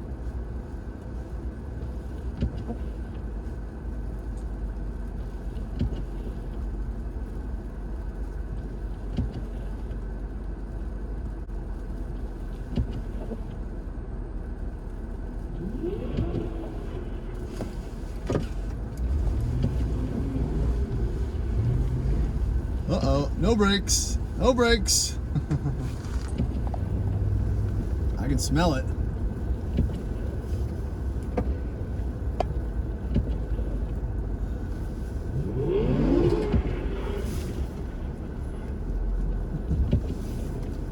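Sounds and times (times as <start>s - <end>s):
car rumbling over snowy road: 0.0s - 40.9s
car engine revving: 15.0s - 40.9s.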